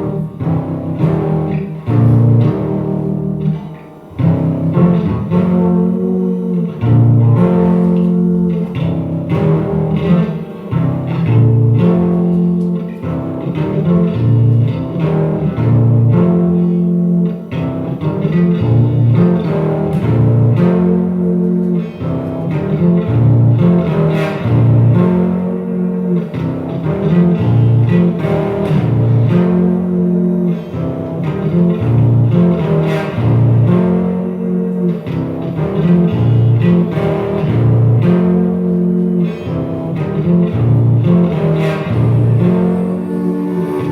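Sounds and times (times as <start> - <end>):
guitar and bass guitar music: 0.0 - 43.9
held pitched notes: 0.0 - 43.9
low bass line: 39.8 - 43.9.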